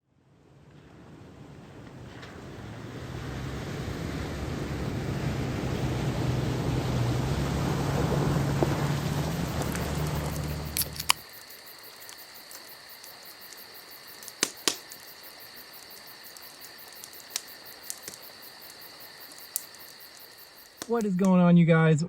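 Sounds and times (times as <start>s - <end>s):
crickets chirping: 3.4s - 22.0s
sharp clicks: 9.3s - 21.4s.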